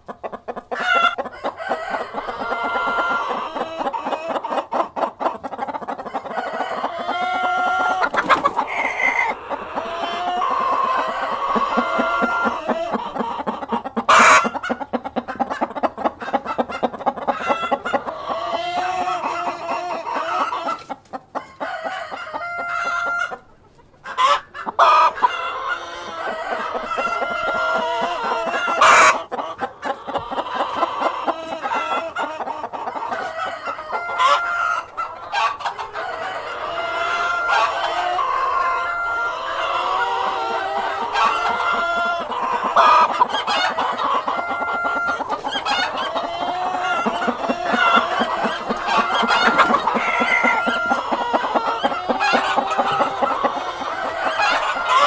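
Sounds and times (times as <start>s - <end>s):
hens clucking: 0.0s - 55.0s
rooster crowing: 0.9s - 3.7s, 6.1s - 13.0s, 21.4s - 23.3s, 33.0s - 55.0s.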